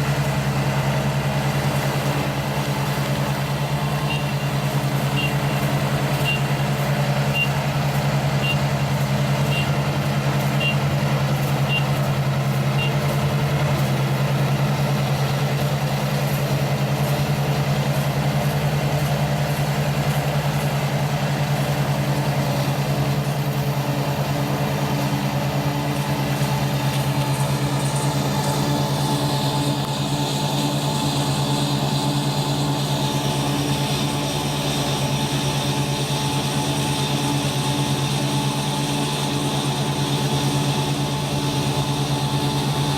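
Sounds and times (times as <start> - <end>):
combine harvester engine drone: 0.0 - 42.9
high warning beep: 6.2 - 6.5, 7.3 - 7.6, 9.4 - 9.7, 10.6 - 10.8.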